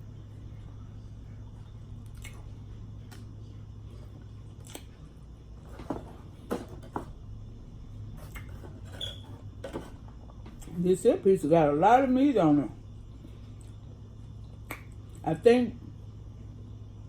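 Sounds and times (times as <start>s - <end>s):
steady low hum: 0.0s - 17.0s
person chewing with mouth smacks: 1.9s - 5.1s, 13.2s - 15.2s.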